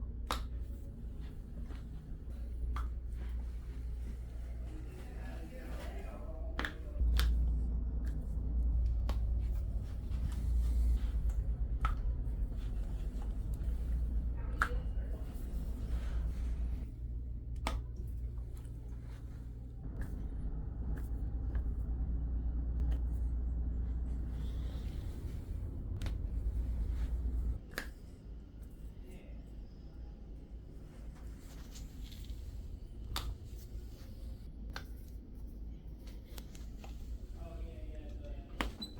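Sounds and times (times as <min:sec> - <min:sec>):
low steady hum: 0:00.0 - 0:38.9
handling rumble: 0:00.1 - 0:27.6.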